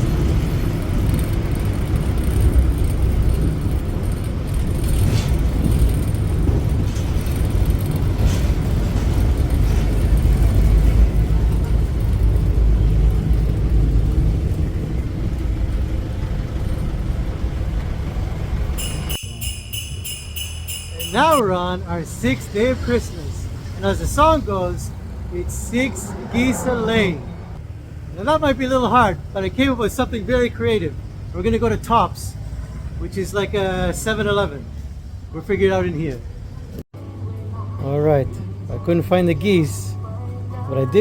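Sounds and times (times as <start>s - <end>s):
road vehicle rumble: 0.0s - 41.0s
jingle-bell music sting: 18.8s - 21.4s.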